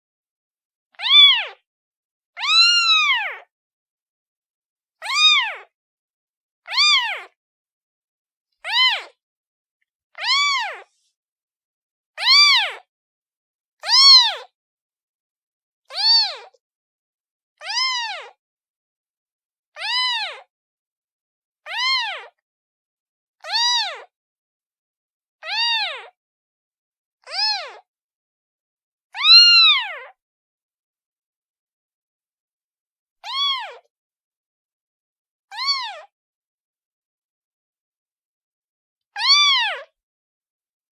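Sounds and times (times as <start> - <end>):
kitten meowing: 1.0 - 1.6, 2.4 - 3.5, 5.0 - 5.7, 6.7 - 7.4, 8.6 - 9.2, 10.2 - 11.0, 12.2 - 12.9, 13.8 - 14.5, 15.9 - 16.6, 17.6 - 18.4, 19.8 - 20.5, 21.7 - 22.3, 23.4 - 24.1, 25.4 - 26.1, 27.3 - 27.8, 29.2 - 30.1, 33.2 - 33.9, 35.5 - 36.1, 39.2 - 39.9.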